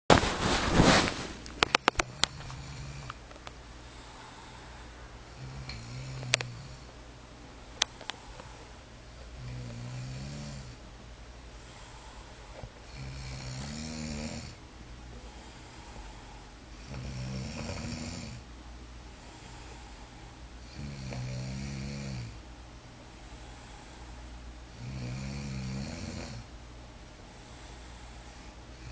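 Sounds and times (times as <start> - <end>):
steady low hum: 0.1 - 28.9
person snoring: 1.6 - 3.2, 3.9 - 6.9, 9.4 - 10.8, 11.6 - 14.6, 15.2 - 18.4, 19.2 - 22.4, 24.7 - 26.5.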